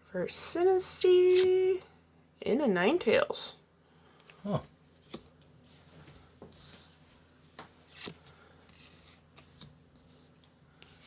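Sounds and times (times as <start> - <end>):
trading cards rustling: 7.8 - 11.0.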